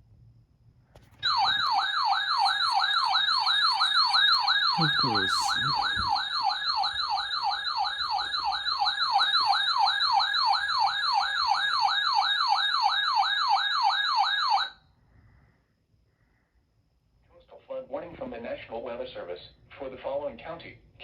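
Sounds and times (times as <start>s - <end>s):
electronic siren yelping: 1.2s - 14.7s.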